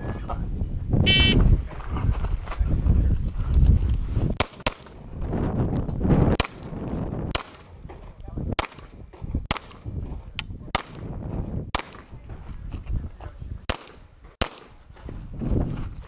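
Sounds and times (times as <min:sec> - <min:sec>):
gunshots: 0:04.4 - 0:05.0, 0:06.3 - 0:10.0, 0:10.7 - 0:12.2, 0:13.7 - 0:14.8.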